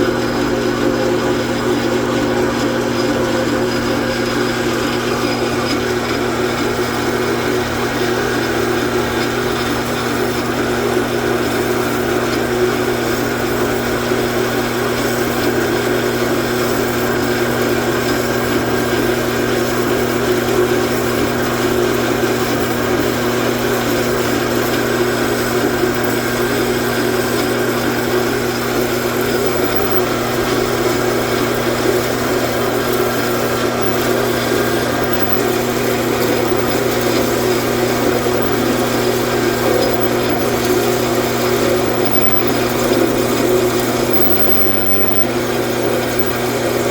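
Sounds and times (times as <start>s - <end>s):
metal lathe humming: 17.6s - 46.9s.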